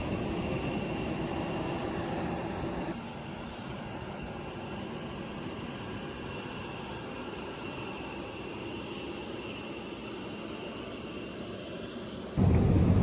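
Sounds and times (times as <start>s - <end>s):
faint high whining tones: 0.0s - 12.7s
jet engine drone: 0.0s - 13.0s.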